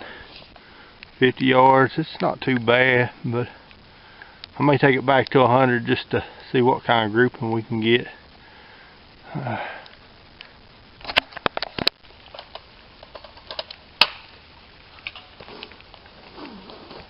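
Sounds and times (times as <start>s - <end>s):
sharp clicks and knocks: 11.0s - 14.3s.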